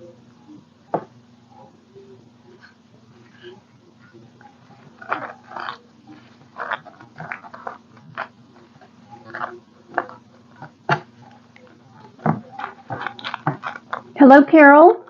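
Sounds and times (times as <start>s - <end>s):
paper rustling: 4.6s - 14.2s.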